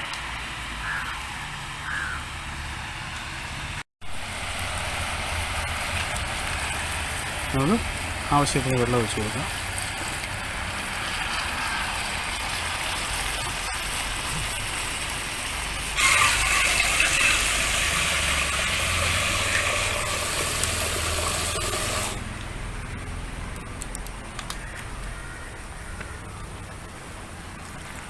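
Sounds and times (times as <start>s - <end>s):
water pouring into a pot: 4.0s - 22.5s
steady hiss: 4.1s - 28.0s.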